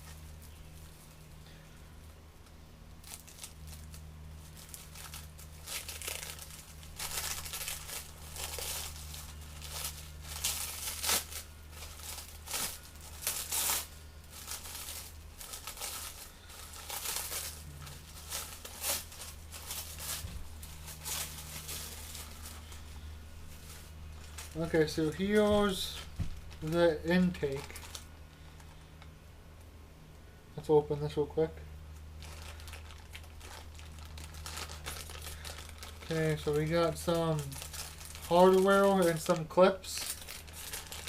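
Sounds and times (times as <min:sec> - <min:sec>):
steady low hum: 0:00.0 - 0:41.0
packaging crinkling and tearing: 0:02.9 - 0:29.0, 0:31.9 - 0:41.0.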